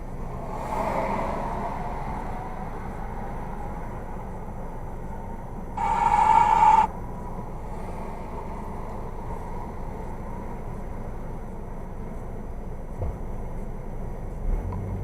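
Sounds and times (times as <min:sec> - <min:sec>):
loud steady tone: 0:00.0 - 0:11.8
car driving road noise: 0:00.0 - 0:15.0.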